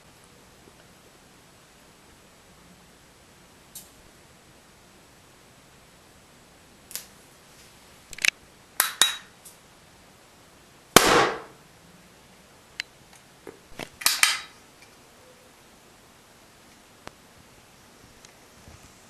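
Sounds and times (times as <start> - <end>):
sharp snap: 3.7 - 4.0, 6.9 - 7.1, 8.1 - 9.6, 11.0 - 11.6, 13.8 - 14.5.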